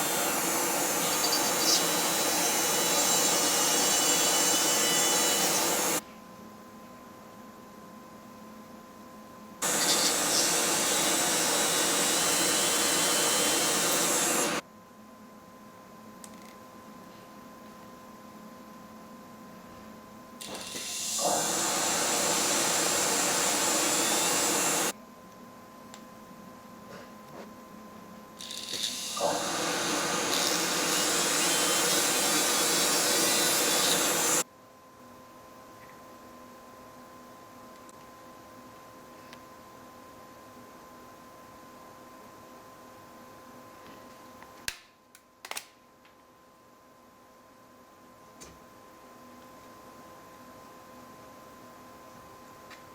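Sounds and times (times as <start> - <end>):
dental lab machine rushing: 9.6 - 14.6, 20.7 - 24.9, 29.1 - 34.4.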